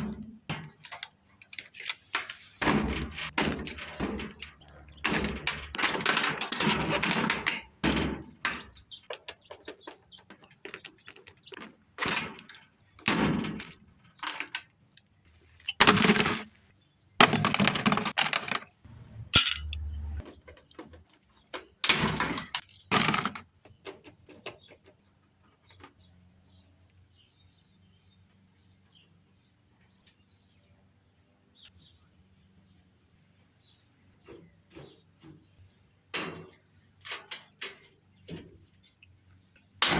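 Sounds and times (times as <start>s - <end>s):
metal parts clanking and rattling: 0.0s - 16.6s, 17.2s - 24.8s, 36.1s - 39.9s.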